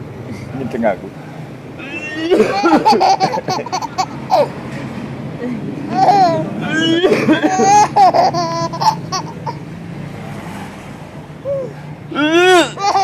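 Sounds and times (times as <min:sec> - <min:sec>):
baby giggling: 0:01.8 - 0:04.6, 0:05.9 - 0:09.7, 0:12.5 - 0:13.0.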